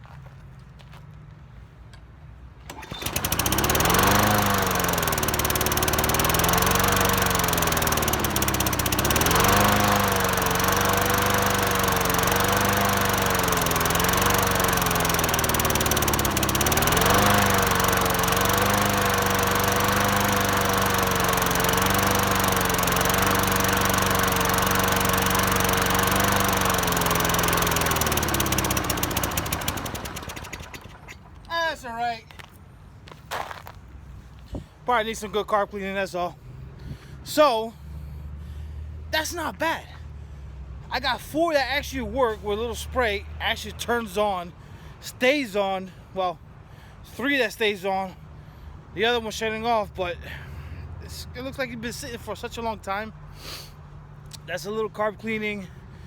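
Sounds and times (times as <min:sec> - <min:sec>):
lawn mower engine running unevenly: 0:02.6 - 0:31.6.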